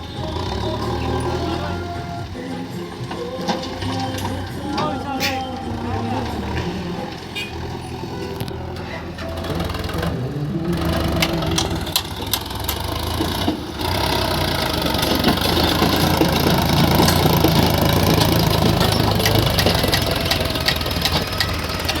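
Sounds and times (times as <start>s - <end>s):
engine knocks and clicks: 0.0s - 22.0s
heavy diesel engine running: 0.0s - 22.0s.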